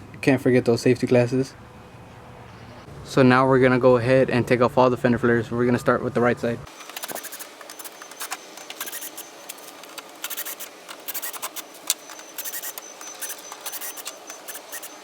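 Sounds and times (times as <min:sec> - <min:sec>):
plastic scraping and clicking: 0:06.7 - 0:15.0.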